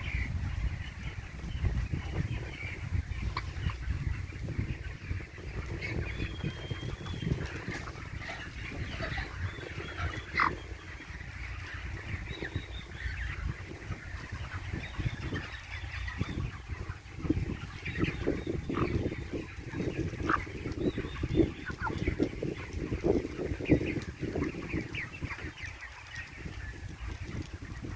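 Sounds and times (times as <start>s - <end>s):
chickens clucking: 0.0s - 27.9s.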